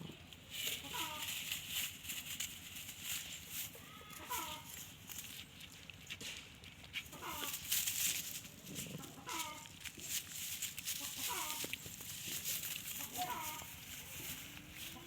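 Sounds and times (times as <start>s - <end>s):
chickens calling: 0.0s - 1.7s, 3.6s - 5.8s, 6.9s - 15.0s
crackle and rustle: 0.0s - 15.0s.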